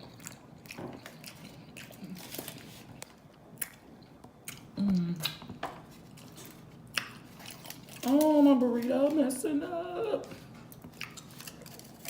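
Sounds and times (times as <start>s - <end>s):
chewing and wet mouth sounds: 0.0s - 8.4s, 10.2s - 12.0s
soft mouth clicks and smacks: 4.5s - 5.5s.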